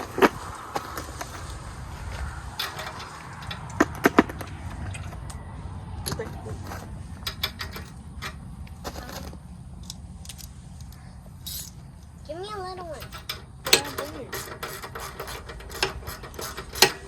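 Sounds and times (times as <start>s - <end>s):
hand tools clinking: 0.0s - 17.0s.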